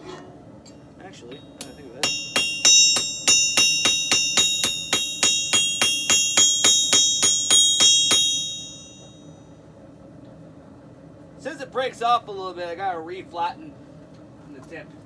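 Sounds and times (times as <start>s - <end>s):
hammer striking steel on anvil: 1.3s - 9.3s.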